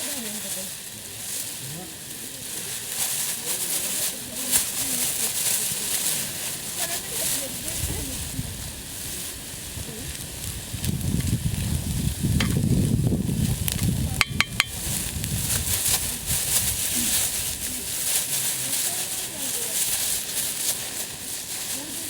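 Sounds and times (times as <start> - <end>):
stirring in a pan: 13.7 - 15.0
sharp metal clinks: 14.2 - 14.8.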